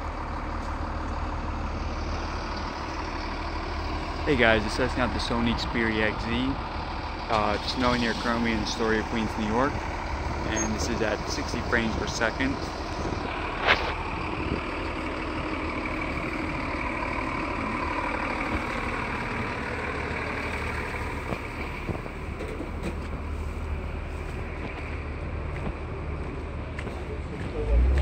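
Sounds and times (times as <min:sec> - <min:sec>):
low rumble: 0:00.0 - 0:28.0
street traffic: 0:00.0 - 0:28.0.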